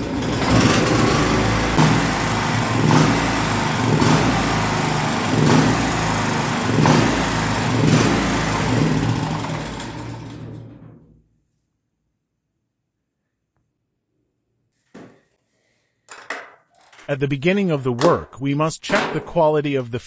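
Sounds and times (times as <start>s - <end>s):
generator engine surging: 0.0s - 11.1s.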